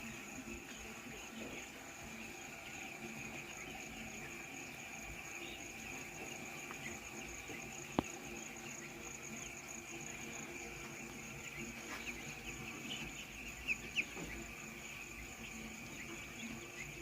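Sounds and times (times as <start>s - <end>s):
chicks peeping: 0.0s - 17.0s.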